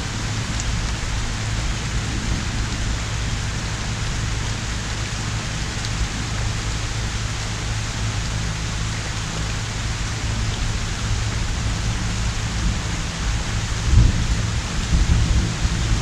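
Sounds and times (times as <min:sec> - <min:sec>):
pouring rain: 0:00.0 - 0:16.0
thunder rumbling: 0:12.6 - 0:16.0.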